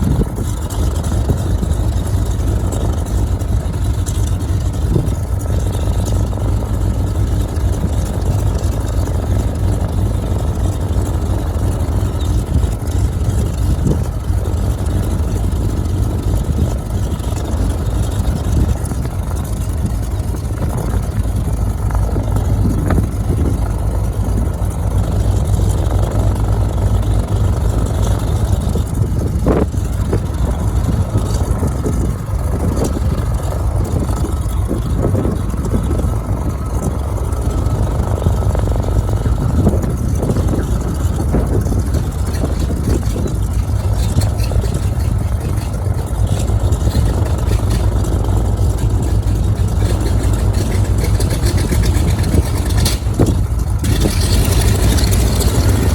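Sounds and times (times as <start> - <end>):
twin radial engines running: 0.0 - 55.9.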